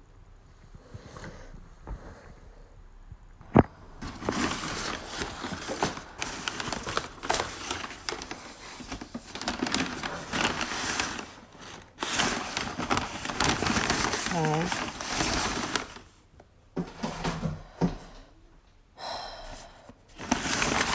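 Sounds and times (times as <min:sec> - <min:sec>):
cardboard box being moved: 0:04.0 - 0:16.0, 0:20.1 - 0:20.9
packing paper crinkling: 0:04.0 - 0:16.2, 0:20.1 - 0:20.9.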